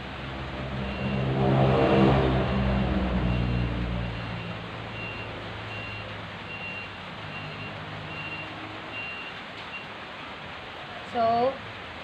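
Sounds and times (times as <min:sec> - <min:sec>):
truck engine running: 0:00.0 - 0:09.3.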